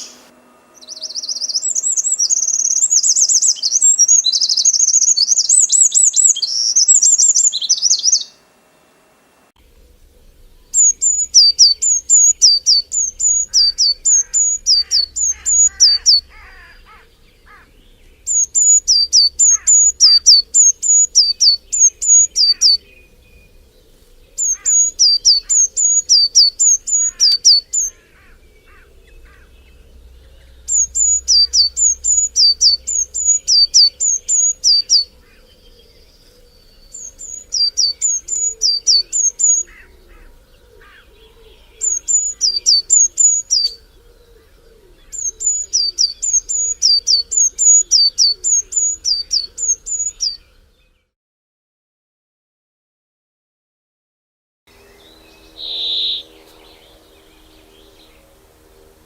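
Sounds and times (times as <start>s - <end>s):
dense high chirping: 0.0s - 8.3s, 9.7s - 39.8s, 55.4s - 57.4s
soft chirping of other birds: 0.0s - 8.4s, 9.6s - 51.2s, 54.7s - 59.0s
songbird singing: 0.0s - 8.5s, 9.6s - 51.2s, 54.7s - 59.0s.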